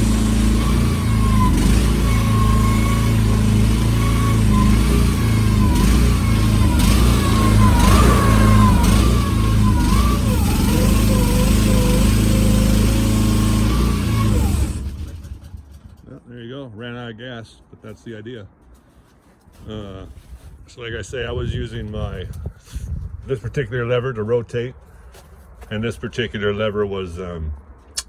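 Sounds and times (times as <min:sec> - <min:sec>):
wavering hydraulic whine: 0:00.0 - 0:15.7
excavator engine running: 0:00.0 - 0:16.1.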